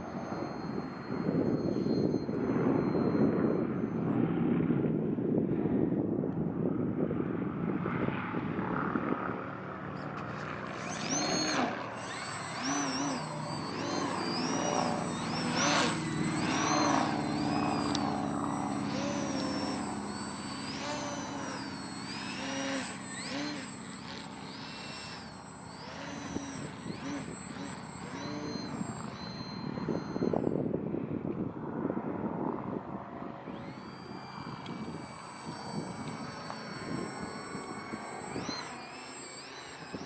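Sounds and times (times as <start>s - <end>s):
model plane motor whining: 0.0s - 4.5s, 8.3s - 40.0s
wind rumble on microphone: 0.1s - 9.8s, 26.4s - 38.6s.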